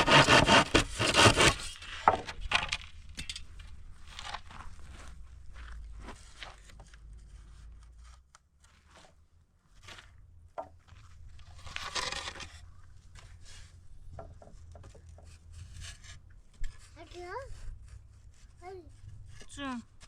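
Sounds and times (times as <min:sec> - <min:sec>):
loud scrape: 0:00.0 - 0:02.2.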